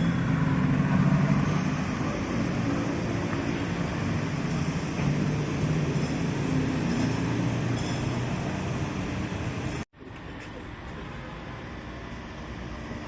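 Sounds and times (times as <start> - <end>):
vehicle engine rumble: 0.0 - 13.0.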